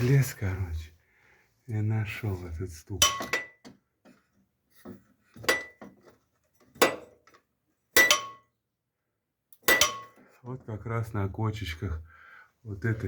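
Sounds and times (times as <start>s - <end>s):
metal rod clinking on metal: 3.0s - 3.7s, 8.0s - 8.4s, 9.6s - 10.2s.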